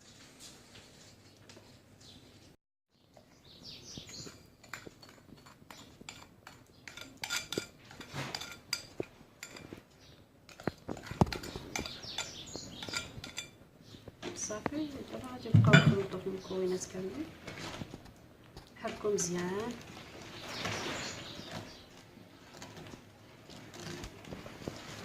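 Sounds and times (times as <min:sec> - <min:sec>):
utensil clinking against container: 0:04.1 - 0:09.7, 0:10.5 - 0:13.6.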